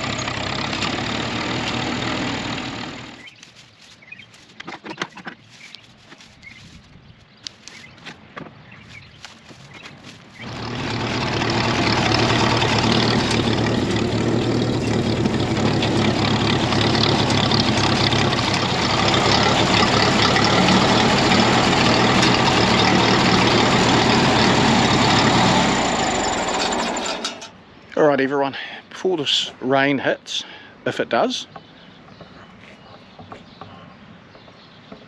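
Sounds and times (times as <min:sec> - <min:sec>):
engine running: 0:00.0 - 0:03.6, 0:09.6 - 0:27.6.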